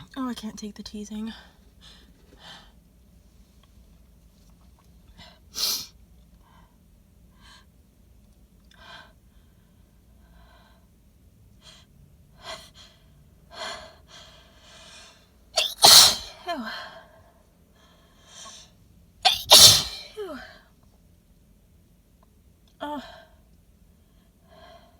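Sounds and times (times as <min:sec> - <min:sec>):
woman sneezing: 0:15.6 - 0:16.7, 0:19.3 - 0:20.5.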